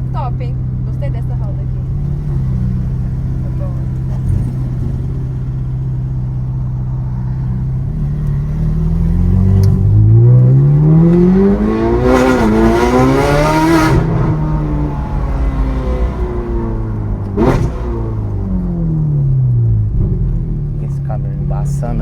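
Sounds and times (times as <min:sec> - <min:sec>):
sports car engine revving: 0:00.0 - 0:22.0.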